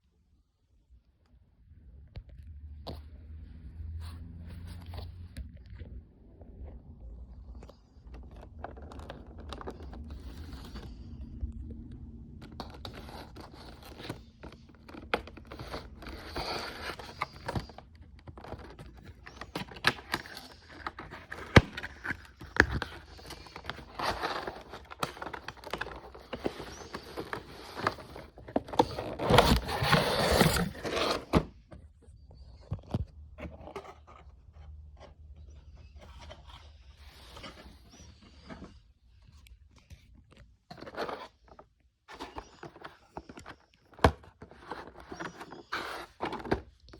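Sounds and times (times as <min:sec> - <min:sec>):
cardboard and plastic crinkling: 0:07.4 - 0:46.9
packaging rustling: 0:08.1 - 0:11.1, 0:12.4 - 0:31.6, 0:40.7 - 0:46.9.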